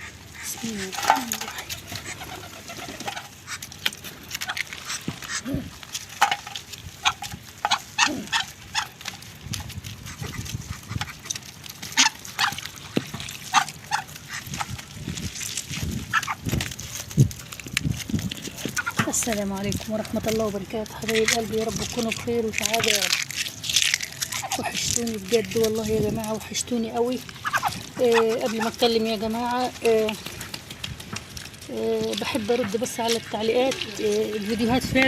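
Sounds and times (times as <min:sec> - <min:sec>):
low gliding animal calls: 0:00.0 - 0:06.4, 0:27.2 - 0:29.0.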